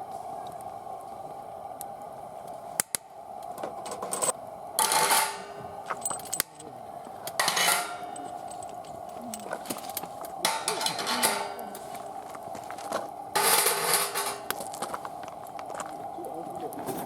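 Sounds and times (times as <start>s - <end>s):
metal grating: 3.9s - 6.4s, 7.3s - 12.1s, 12.8s - 15.0s
metal pieces clinking and scraping: 3.9s - 6.7s, 7.3s - 11.6s, 13.4s - 14.5s.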